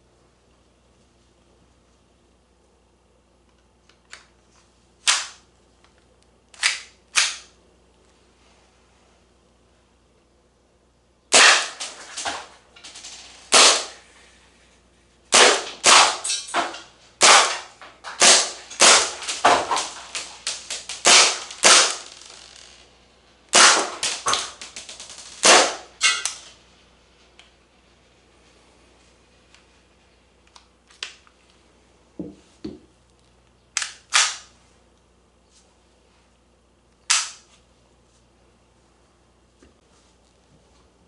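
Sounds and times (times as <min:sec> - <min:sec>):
airsoft pistol shots: 0:11.3 - 0:12.5, 0:13.5 - 0:14.0, 0:15.3 - 0:22.1, 0:23.5 - 0:26.4.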